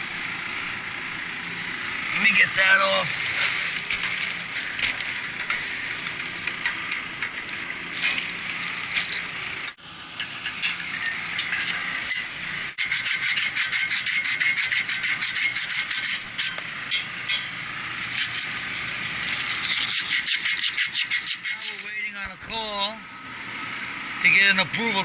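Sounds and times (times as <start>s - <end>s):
sandpaper rubbing on a pipe: 12.8s - 16.6s, 19.3s - 21.9s.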